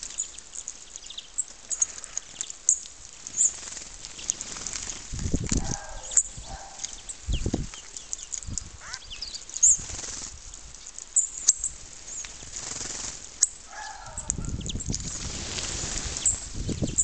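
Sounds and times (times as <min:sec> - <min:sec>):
small birds chirping: 0:00.0 - 0:17.0
wing flutters: 0:03.2 - 0:06.8, 0:09.6 - 0:10.4, 0:12.2 - 0:17.0.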